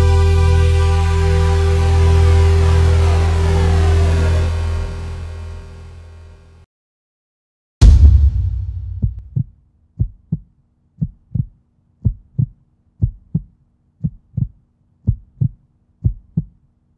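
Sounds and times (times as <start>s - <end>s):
deep booming hit: 7.8s - 9.4s
heartbeat thumps: 7.8s - 16.6s.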